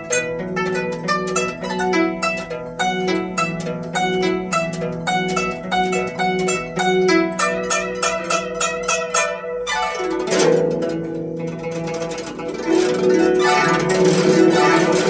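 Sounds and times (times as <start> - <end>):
zither plucked notes: 0.0 - 15.0.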